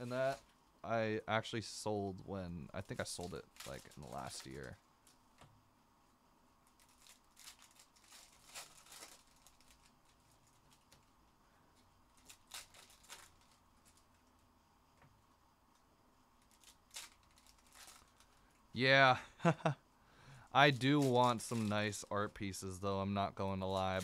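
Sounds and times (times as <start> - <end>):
wrapper crinkling and tearing: 2.8 - 5.2, 6.6 - 11.1, 12.1 - 14.3, 16.4 - 18.4, 20.6 - 22.1, 23.7 - 24.0.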